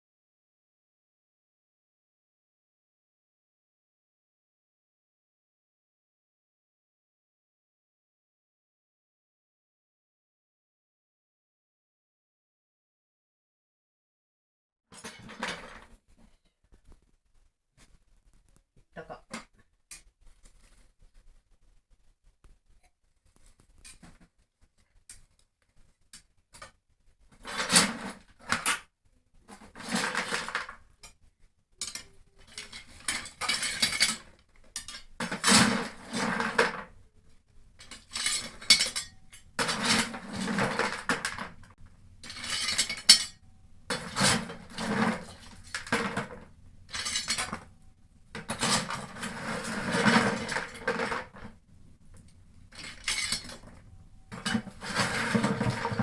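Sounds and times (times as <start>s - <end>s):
metal shovel scooping coal: 27.3s - 28.8s, 29.5s - 31.1s, 31.8s - 36.9s, 37.8s - 47.7s, 48.3s - 51.6s, 52.7s - 56.0s.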